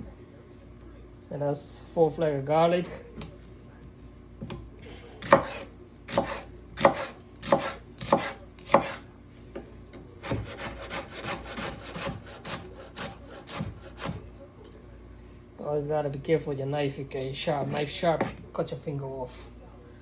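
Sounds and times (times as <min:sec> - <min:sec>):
knife chopping on cutting board: 0:05.2 - 0:09.0, 0:10.2 - 0:14.2, 0:17.6 - 0:18.4.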